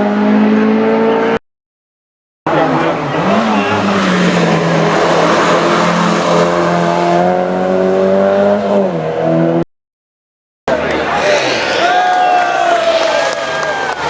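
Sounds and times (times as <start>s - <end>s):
rally car engine accelerating: 0.0s - 1.4s, 2.5s - 9.6s, 10.7s - 12.2s.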